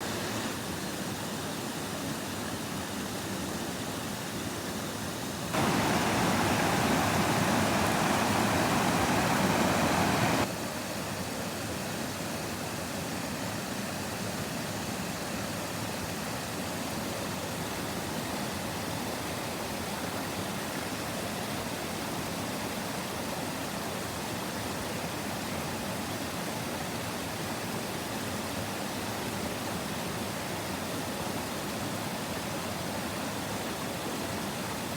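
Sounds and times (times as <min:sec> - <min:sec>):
waterfall roaring: 0:05.6 - 0:10.5.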